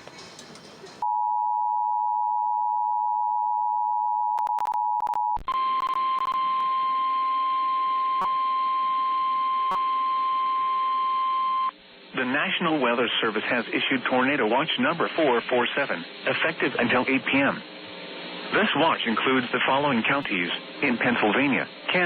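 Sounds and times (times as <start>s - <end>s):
radio static hiss: 11.6s - 22.0s.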